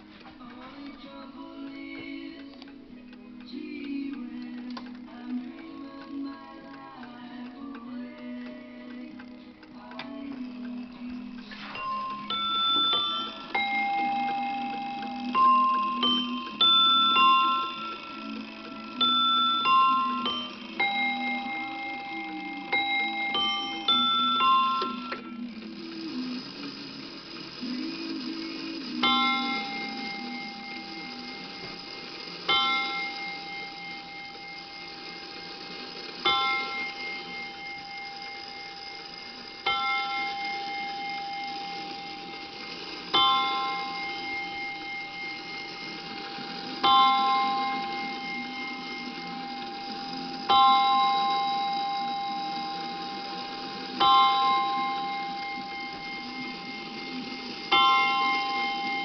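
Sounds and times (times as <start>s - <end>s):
clock striking a bell: 5.0s - 59.0s.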